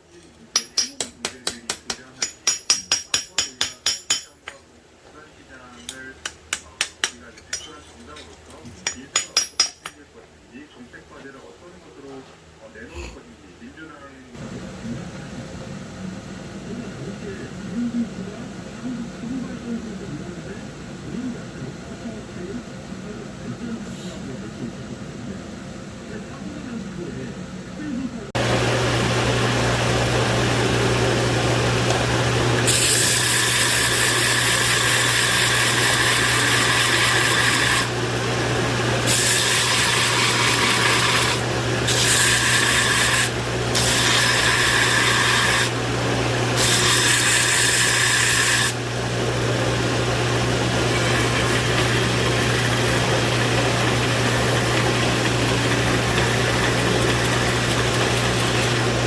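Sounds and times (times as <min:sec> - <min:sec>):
electric power tool humming: 0:28.4 - 0:59.0
grinding into steel: 0:28.4 - 0:59.0.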